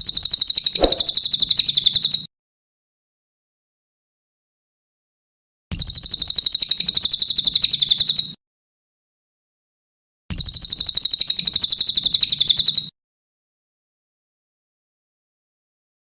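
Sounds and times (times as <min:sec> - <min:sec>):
songbird fast chattering trill: 0:00.0 - 0:02.2.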